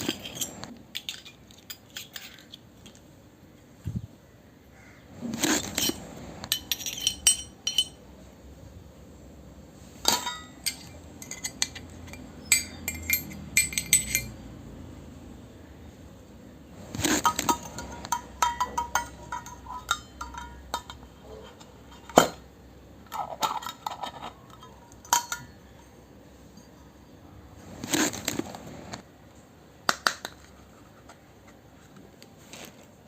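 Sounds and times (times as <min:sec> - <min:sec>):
toy kitchenware clinking: 0:00.0 - 0:03.1, 0:05.5 - 0:08.1, 0:10.0 - 0:14.5, 0:17.0 - 0:27.0.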